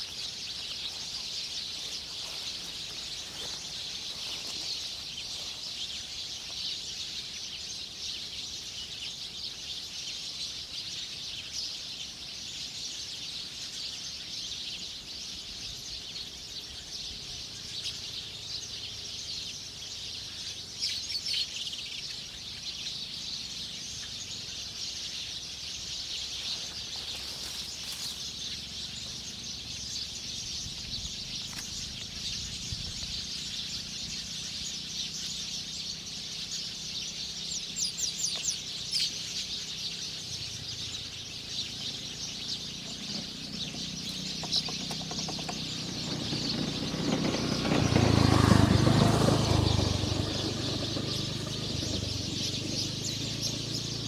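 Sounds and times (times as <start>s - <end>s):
high-pitched chirping chorus: 0.0s - 9.8s, 24.0s - 54.0s
bird calls: 0.0s - 54.0s.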